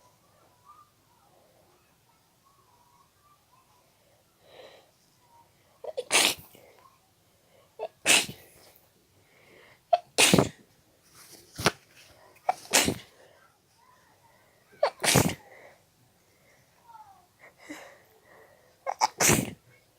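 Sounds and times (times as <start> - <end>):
person sneezing: 5.9 - 6.6, 7.9 - 8.6, 10.0 - 10.6, 12.5 - 13.1, 14.8 - 15.5, 18.9 - 19.6.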